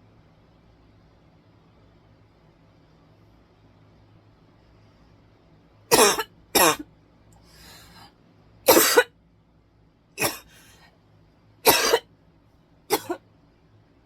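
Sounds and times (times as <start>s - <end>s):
person coughing hard: 5.9s - 6.8s, 8.7s - 9.1s, 10.2s - 10.6s, 11.7s - 12.1s, 12.9s - 13.2s.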